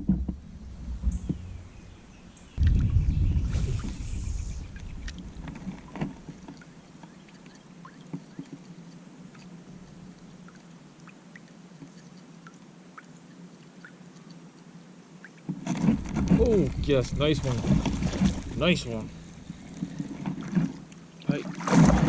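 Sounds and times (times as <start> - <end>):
low rumble with hiss: 0.0 - 7.8, 15.9 - 22.0
faint steady hum: 0.0 - 22.0.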